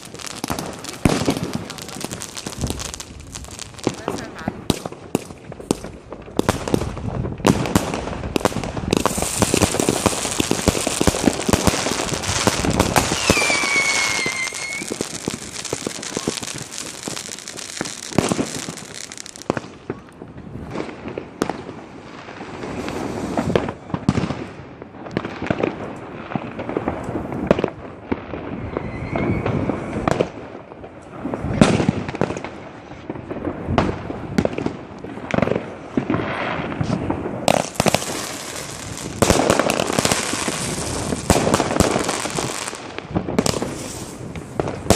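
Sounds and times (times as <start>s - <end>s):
fireworks hiss: 0.0s - 4.9s, 7.6s - 19.6s, 36.7s - 44.9s
fireworks bangs and crackling: 0.0s - 44.9s
descending firework whistle: 11.9s - 19.4s, 28.4s - 30.3s.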